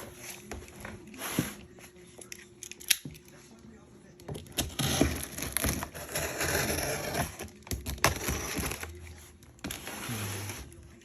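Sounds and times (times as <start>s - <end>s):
cardboard crunching and scraping: 9.7s - 11.0s.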